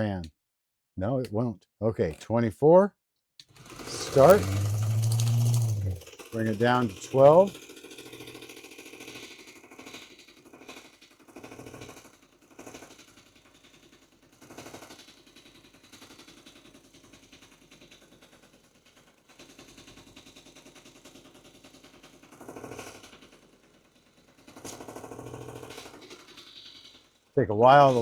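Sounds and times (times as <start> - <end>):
compound pressed onto polishing wheel: 3.5 - 7.6, 27.6 - 28.0
small polishing machine motor: 3.6 - 10.3, 24.6 - 28.0.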